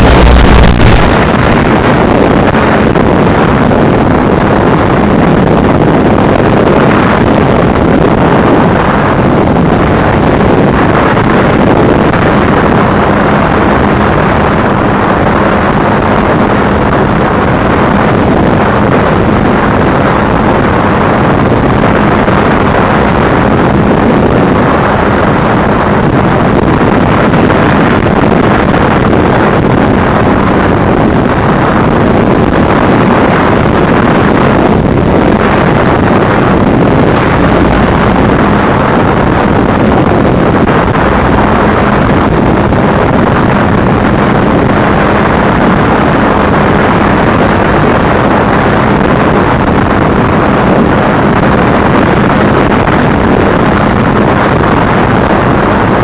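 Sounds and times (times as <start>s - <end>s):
motor noise: 0.0s - 14.9s, 27.0s - 48.4s
rushing wind: 0.0s - 56.0s.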